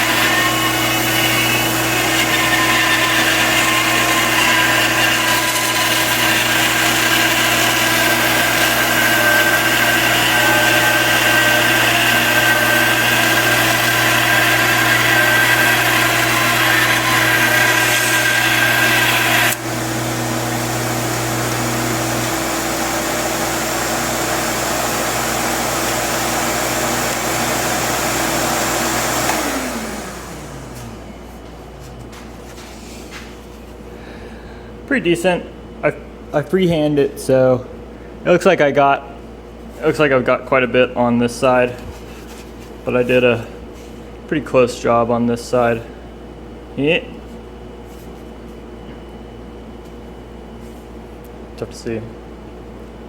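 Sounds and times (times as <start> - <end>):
bandsaw cutting wood: 0.0 - 30.8
bandsaw motor hum: 0.0 - 31.7.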